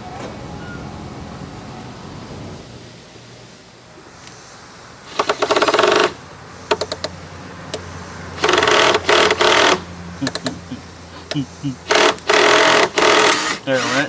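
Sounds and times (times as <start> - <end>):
power drill running: 5.0 - 7.0, 8.3 - 10.5, 11.8 - 14.0
sharp clicks: 5.1 - 14.0.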